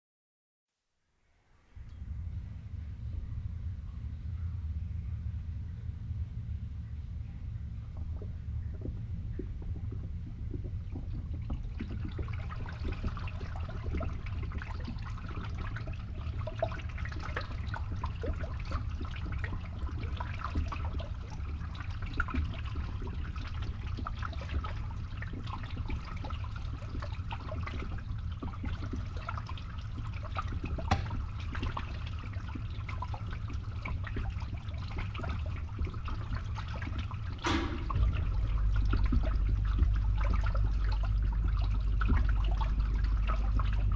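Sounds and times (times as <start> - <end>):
pump humming: 1.7 - 43.9
water draining in a pipe: 4.7 - 43.9
water drips: 7.9 - 43.9
water splash: 37.4 - 40.9.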